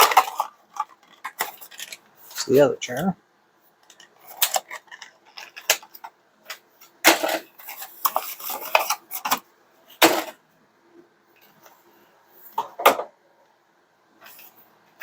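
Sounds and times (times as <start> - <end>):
packaging rustling: 7.1 - 9.4.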